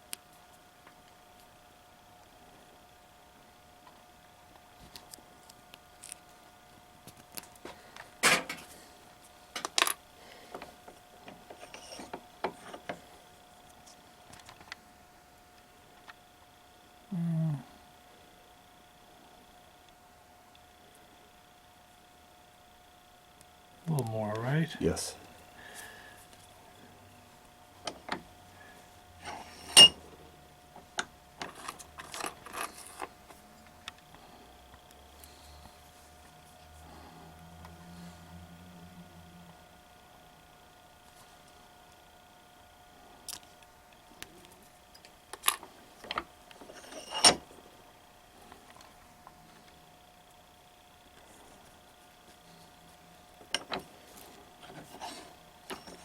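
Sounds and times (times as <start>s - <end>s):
faint steady hum: 0.0s - 56.0s
metal tools clinking: 29.3s - 30.0s
loud ringing metallic clink: 29.7s - 30.0s.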